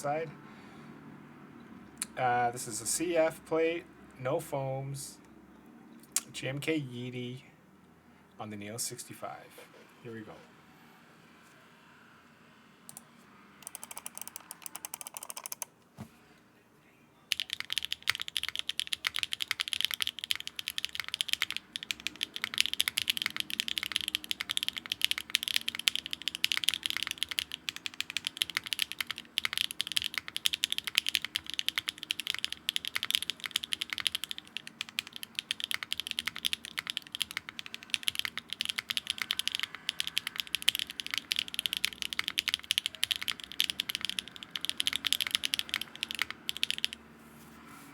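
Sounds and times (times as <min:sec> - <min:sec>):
fast mechanical keyboard typing: 0:13.6 - 0:15.7, 0:17.3 - 0:47.1.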